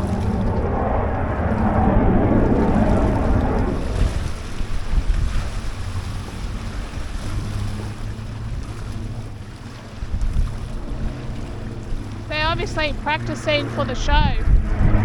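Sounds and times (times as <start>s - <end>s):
waves hissing: 0.0s - 10.0s, 10.6s - 15.0s
wind buffeting microphone: 0.0s - 15.0s.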